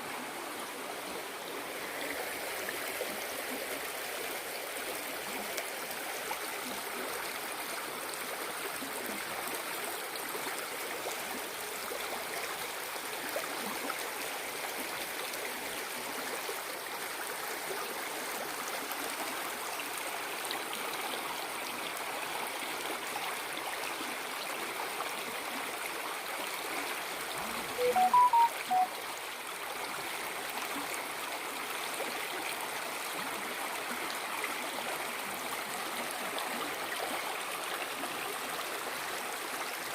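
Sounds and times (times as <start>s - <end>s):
short high notes: 27.8s - 28.9s.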